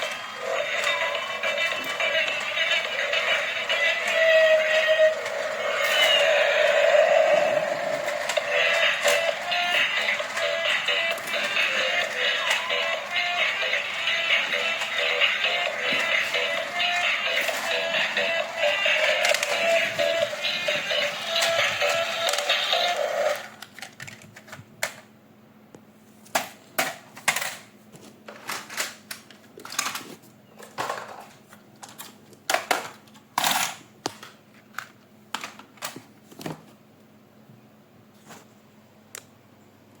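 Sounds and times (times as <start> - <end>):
music: 0.0 - 23.5
toy packaging clicks and knocks: 14.5 - 20.3, 28.3 - 36.0.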